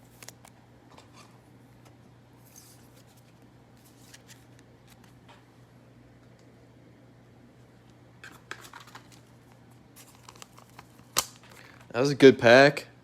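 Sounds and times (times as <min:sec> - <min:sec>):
trading cards rustling and clicking: 0:00.0 - 0:00.6, 0:02.4 - 0:05.3, 0:08.2 - 0:11.9.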